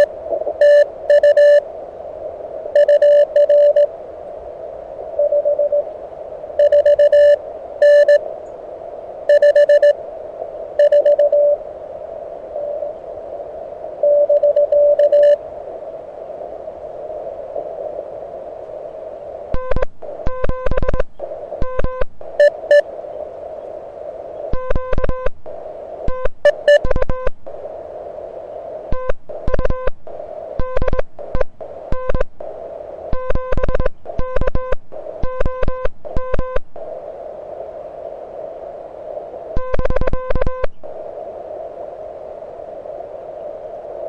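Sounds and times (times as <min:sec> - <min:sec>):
morse code sidetone beeping: 0:00.0 - 0:01.6, 0:02.8 - 0:03.9, 0:06.6 - 0:08.2, 0:09.3 - 0:10.0, 0:10.8 - 0:11.6, 0:19.6 - 0:22.8, 0:24.6 - 0:27.7, 0:28.9 - 0:37.0, 0:39.6 - 0:41.0
radio receiver hiss: 0:00.0 - 0:44.0
high-pitched double beeps: 0:19.6 - 0:22.8, 0:24.6 - 0:27.6, 0:28.9 - 0:32.6, 0:33.2 - 0:36.9, 0:39.6 - 0:41.0.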